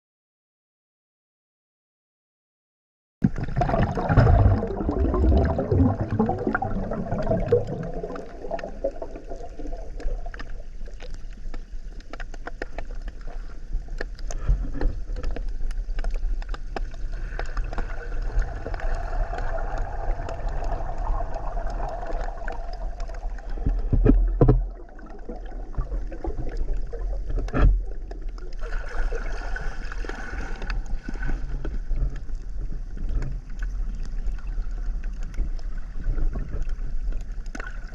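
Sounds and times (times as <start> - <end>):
water noise: 3.2 - 37.9
low rumble: 3.6 - 10.9, 17.0 - 28.8.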